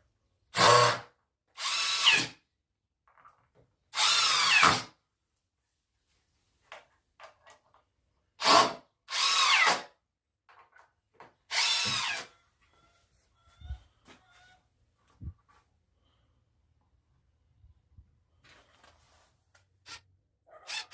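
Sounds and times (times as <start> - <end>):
power drill bursts: 0.6 - 2.4, 4.0 - 4.9, 8.4 - 9.9, 11.5 - 12.3.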